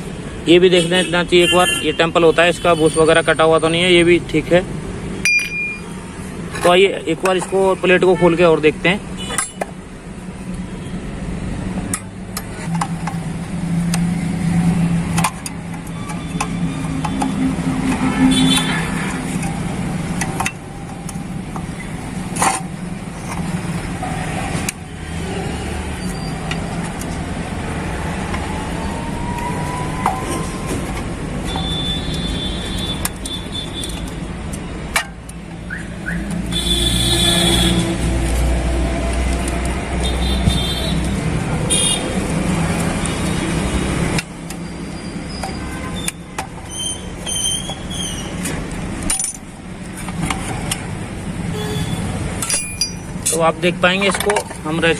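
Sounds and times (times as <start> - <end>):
road traffic passing: 0.0 - 54.9
horn toots: 17.2 - 19.2, 35.7 - 38.2
hand tools clicking on metal: 29.3 - 35.6, 38.0 - 41.6, 42.2 - 51.1, 52.2 - 54.9.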